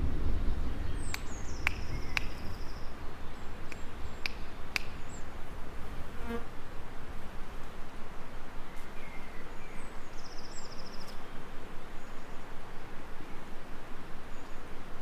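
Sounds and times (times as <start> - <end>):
birds chirping: 0.0 - 6.2
insects buzzing: 0.0 - 12.8.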